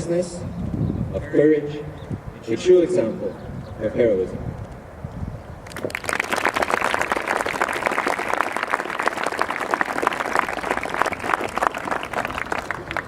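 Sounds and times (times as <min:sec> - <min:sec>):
audience applauding: 0:05.7 - 0:13.0.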